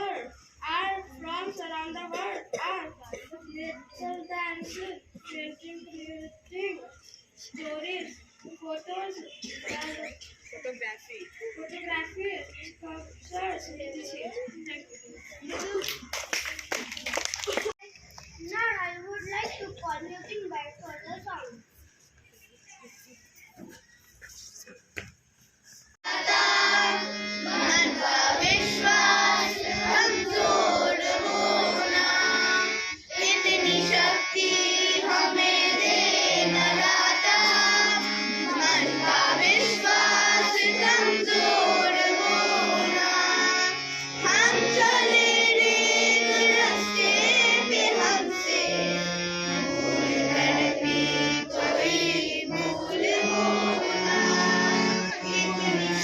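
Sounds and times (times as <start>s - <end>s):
person singing: 31.2s - 56.0s.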